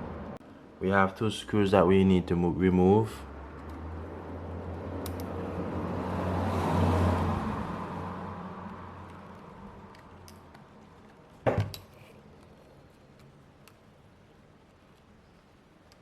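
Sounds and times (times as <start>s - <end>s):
vehicle passing by: 2.2s - 9.9s.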